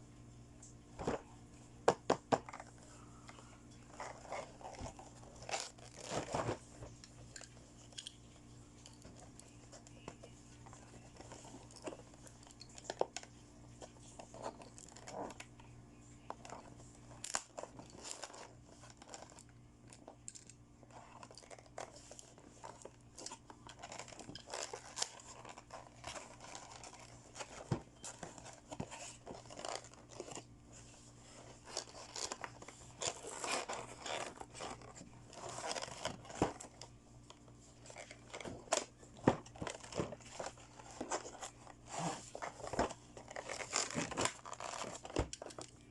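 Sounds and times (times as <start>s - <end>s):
packaging crinkling and tearing: 3.9s - 6.6s, 16.2s - 30.5s, 31.4s - 36.8s, 37.8s - 45.7s.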